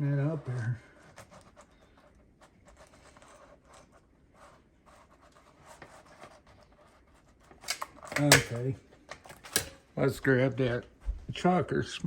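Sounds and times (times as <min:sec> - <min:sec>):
faint scratching: 0:00.0 - 0:07.7.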